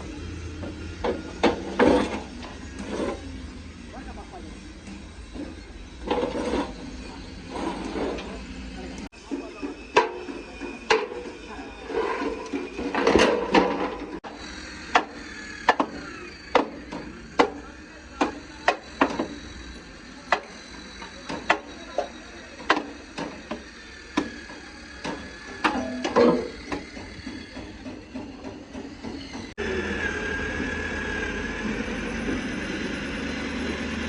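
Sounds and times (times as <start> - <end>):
hammer blows with ringing: 14.9 - 29.5.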